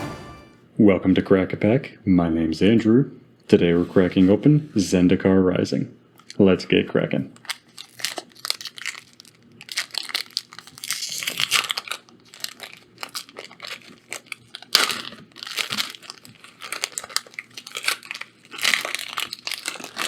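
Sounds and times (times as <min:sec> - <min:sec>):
foil wrapper crinkling and tearing: 0:07.3 - 0:20.0.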